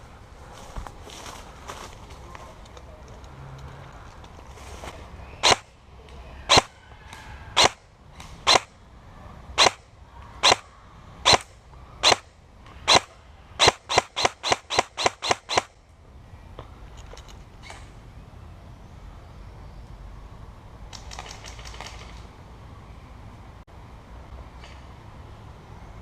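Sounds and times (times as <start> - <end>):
airsoft gun shots: 5.4 - 5.7, 6.5 - 6.7, 7.6 - 7.8, 8.4 - 8.7, 9.6 - 9.8, 10.4 - 12.3, 12.9 - 15.7.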